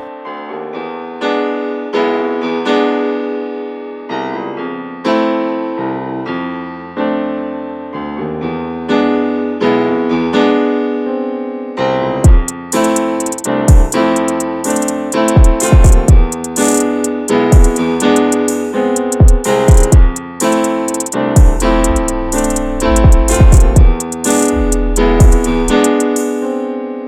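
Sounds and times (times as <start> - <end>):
piano music: 0.0 - 27.0
heavy low thumps: 21.4 - 25.8.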